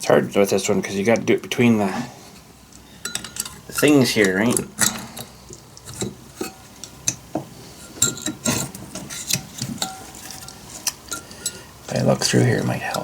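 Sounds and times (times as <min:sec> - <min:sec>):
small metal clicks and scrapes: 0:07.8 - 0:13.0.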